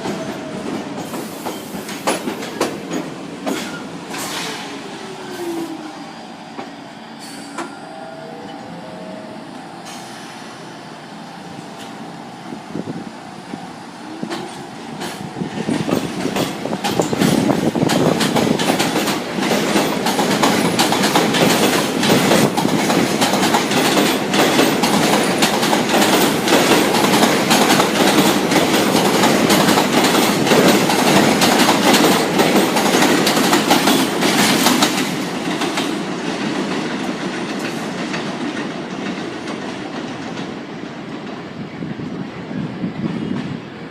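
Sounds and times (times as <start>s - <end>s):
train wheel squeals: 0.0s - 2.7s, 3.5s - 10.7s
subway train wheels clattering: 0.0s - 43.9s.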